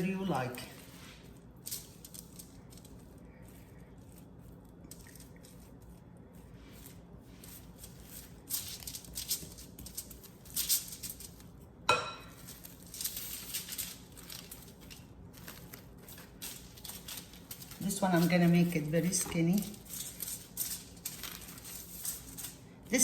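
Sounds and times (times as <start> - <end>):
crinkly wrapping rustling: 0.0 - 23.0.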